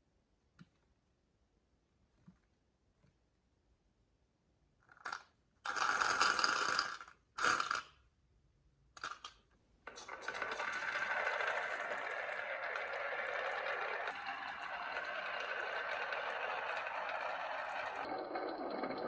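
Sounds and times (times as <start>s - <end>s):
glass marbles rolling on wood: 9.9s - 19.0s.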